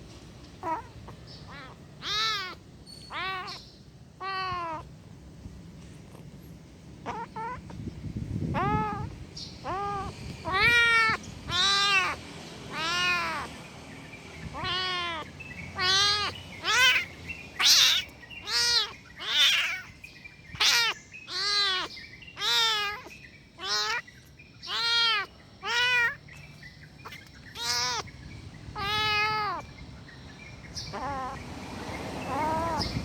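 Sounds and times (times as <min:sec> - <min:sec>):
kitten meowing angrily: 0:00.6 - 0:03.6, 0:04.2 - 0:04.9, 0:07.0 - 0:07.8, 0:08.5 - 0:13.5, 0:14.5 - 0:19.9, 0:20.5 - 0:24.1, 0:24.7 - 0:26.4, 0:27.0 - 0:28.1, 0:28.7 - 0:29.7, 0:30.8 - 0:31.4, 0:32.3 - 0:33.0.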